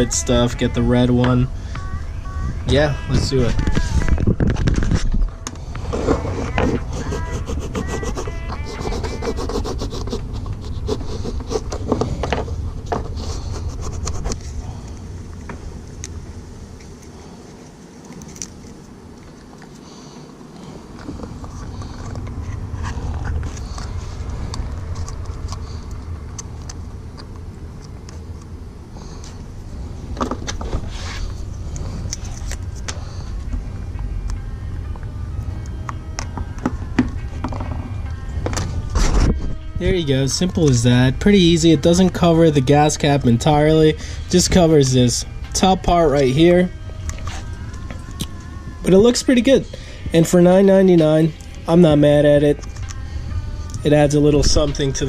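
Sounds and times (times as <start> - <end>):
steady low rumble: 0.0 - 55.0
handling scrapes and clicks: 16.8 - 19.9, 30.2 - 33.0.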